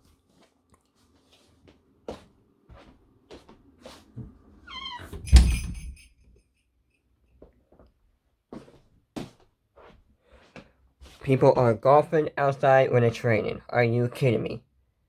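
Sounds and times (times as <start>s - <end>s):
footsteps: 0.3s - 4.4s, 8.5s - 11.3s
door hinge squeaking: 4.7s - 5.8s
door shutting with a thump: 5.0s - 6.0s.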